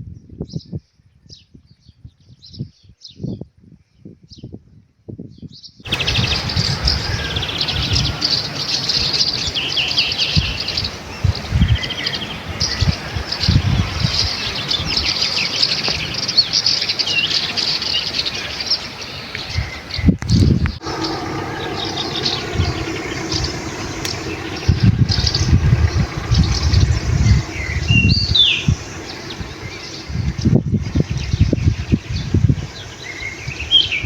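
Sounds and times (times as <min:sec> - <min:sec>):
small birds chirping and trilling: 0:05.4 - 0:34.0
low thumps and rumbles: 0:20.2 - 0:32.7.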